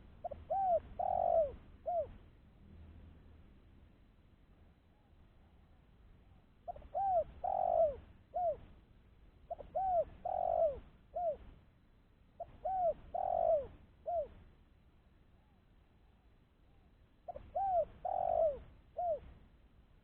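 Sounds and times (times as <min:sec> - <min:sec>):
dove cooing: 0:00.0 - 0:02.2, 0:06.6 - 0:08.7, 0:09.5 - 0:11.5, 0:12.4 - 0:14.4, 0:17.2 - 0:19.3.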